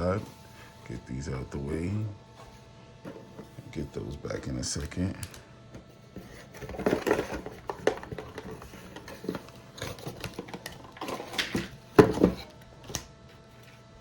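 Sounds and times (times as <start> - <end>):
packaging rustling: 6.0 - 12.5.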